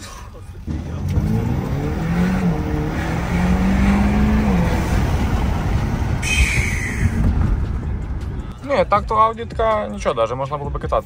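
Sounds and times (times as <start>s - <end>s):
turbocharged engine accelerating: 0.5s - 8.5s.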